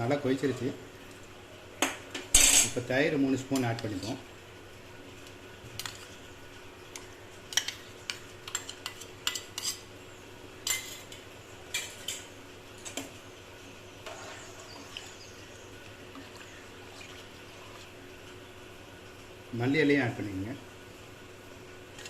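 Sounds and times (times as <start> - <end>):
spoon scraping pot: 14.0 - 15.2.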